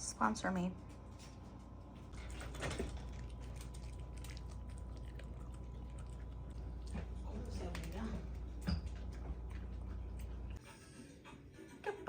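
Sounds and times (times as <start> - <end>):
steady low hum: 0.0 - 10.6
dogs chewing food: 2.1 - 10.7.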